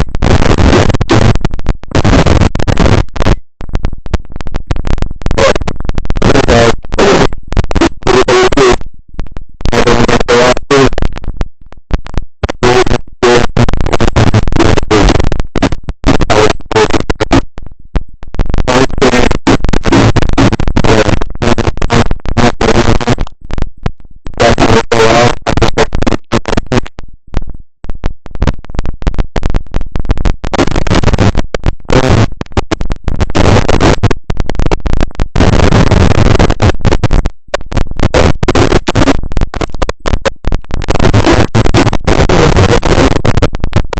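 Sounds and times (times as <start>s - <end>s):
microphone static crackling: 0.0s - 43.9s.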